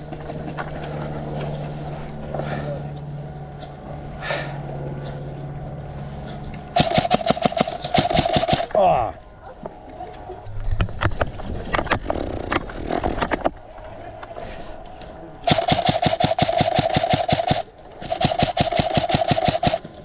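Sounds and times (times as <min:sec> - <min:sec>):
airsoft gun firing bursts: 0:06.8 - 0:08.8, 0:15.4 - 0:19.9.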